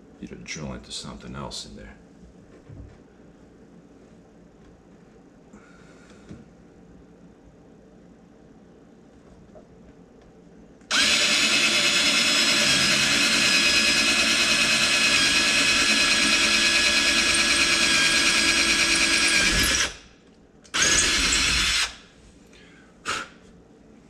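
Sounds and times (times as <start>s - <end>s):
cordless drill boring wood: 10.9s - 20.0s, 20.7s - 22.0s.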